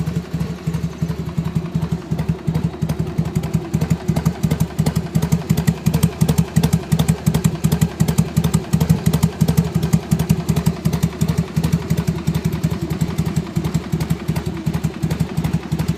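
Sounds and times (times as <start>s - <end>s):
motorcycle engine idling: 0.0s - 15.9s.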